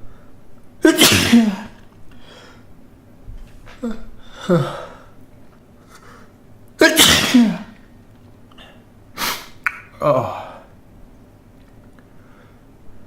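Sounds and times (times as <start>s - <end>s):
man sneezing: 0.8s - 1.8s, 6.8s - 7.8s, 9.2s - 10.7s.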